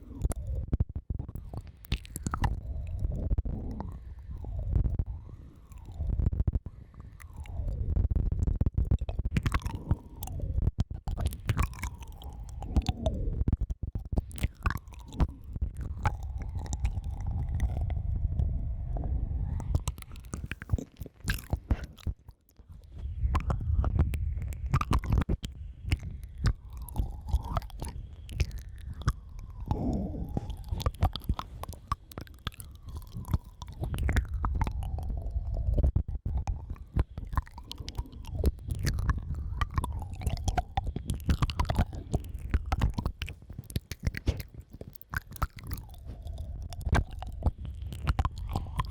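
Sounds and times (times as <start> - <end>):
wet mouth clicks: 1.2 - 7.8, 8.8 - 48.9.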